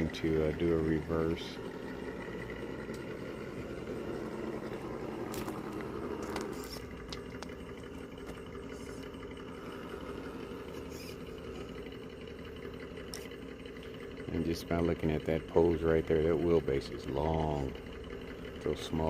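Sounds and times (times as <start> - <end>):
toy car electric motor: 4.0 - 12.1.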